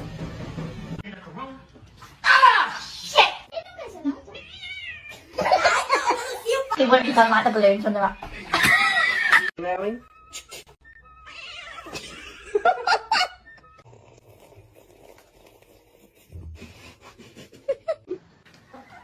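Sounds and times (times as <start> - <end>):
cat meowing: 4.3 - 5.3, 11.1 - 12.0.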